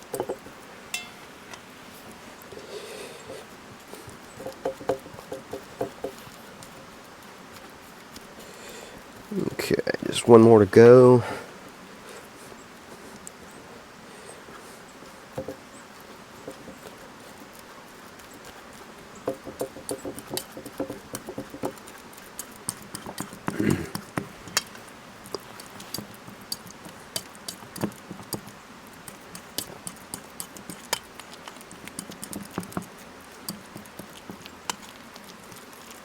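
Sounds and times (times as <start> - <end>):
fork mashing bananas: 0.0 - 10.9, 15.2 - 36.0
fork clicks and taps: 0.1 - 1.6, 19.3 - 35.3.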